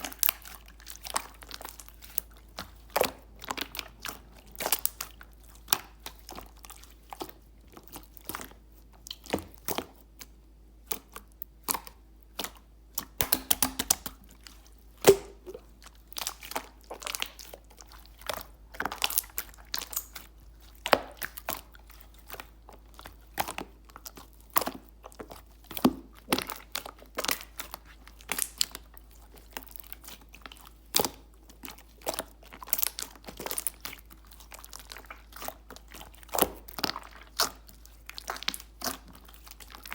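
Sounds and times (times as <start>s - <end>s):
slime squished by hand: 0.0s - 39.9s.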